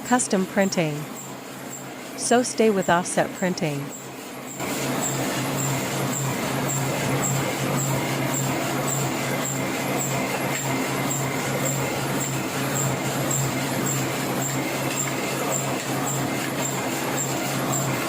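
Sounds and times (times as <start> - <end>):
printing press low hum: 0.0 - 18.0.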